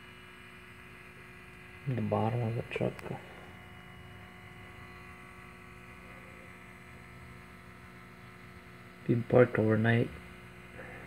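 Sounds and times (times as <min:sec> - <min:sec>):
faint electric hum: 0:00.0 - 0:11.0.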